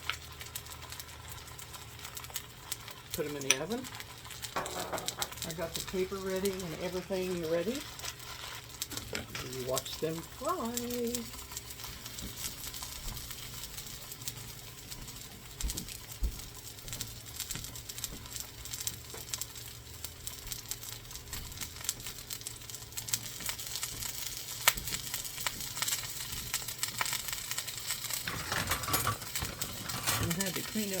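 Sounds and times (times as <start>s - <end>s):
patties sizzling on a griddle: 0.0s - 31.0s.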